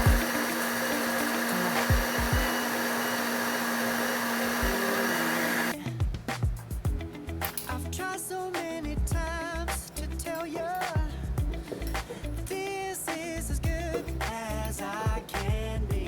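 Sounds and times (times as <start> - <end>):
background music: 0.0 - 3.3, 3.9 - 16.0
blender motor running: 0.0 - 5.8.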